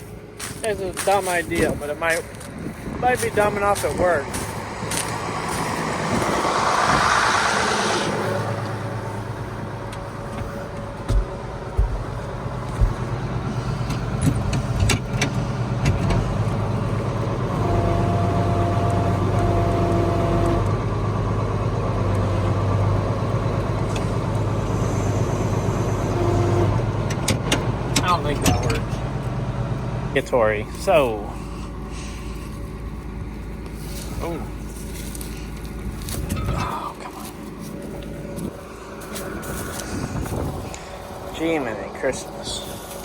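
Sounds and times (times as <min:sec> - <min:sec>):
tractor diesel engine running: 0:00.0 - 0:43.0
knocks and clunks: 0:09.9 - 0:16.6, 0:26.9 - 0:29.0.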